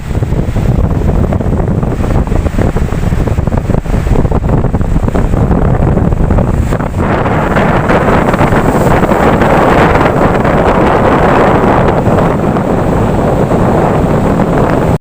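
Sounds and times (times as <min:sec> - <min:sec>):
surf rumbling: 0:00.0 - 0:15.0
wave breaking and washing in: 0:00.0 - 0:15.0.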